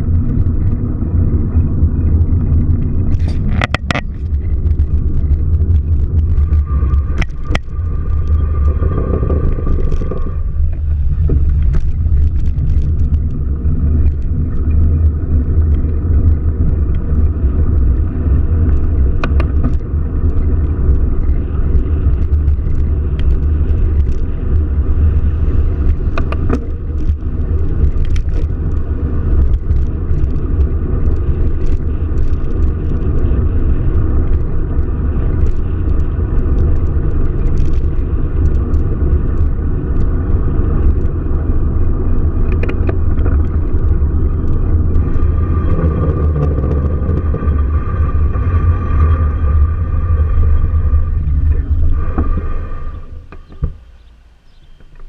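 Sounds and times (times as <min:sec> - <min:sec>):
car engine and road noise: 0:00.0 - 0:55.0
clicks and knocks: 0:02.8 - 0:04.6.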